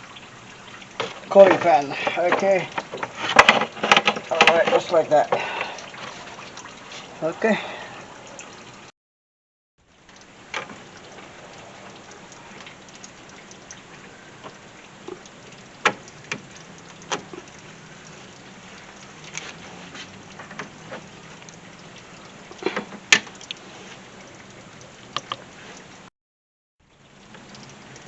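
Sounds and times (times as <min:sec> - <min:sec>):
tools clicking and knocking: 0:01.0 - 0:04.8.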